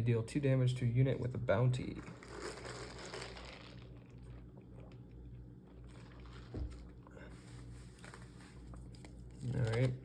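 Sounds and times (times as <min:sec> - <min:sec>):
trading cards rustling: 0:07.4 - 0:10.0.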